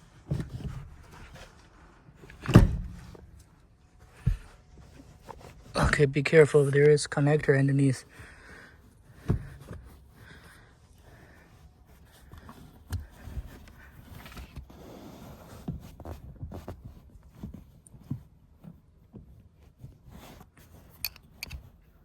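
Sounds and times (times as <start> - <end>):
knocks and thumps: 2.4 - 3.3, 4.1 - 4.6.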